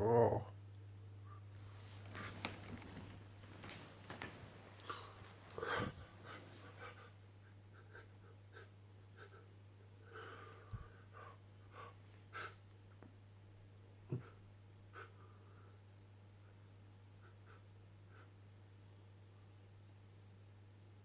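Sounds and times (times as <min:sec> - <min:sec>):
faint rustles: 0:01.6 - 0:06.9.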